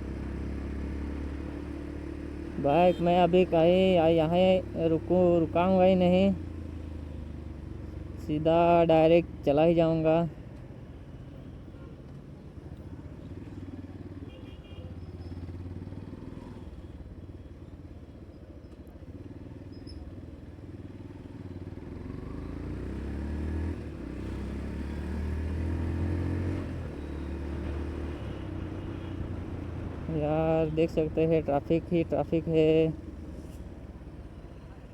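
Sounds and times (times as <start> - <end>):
motorcycle engine accelerating: 0.0 - 8.2, 20.9 - 34.6.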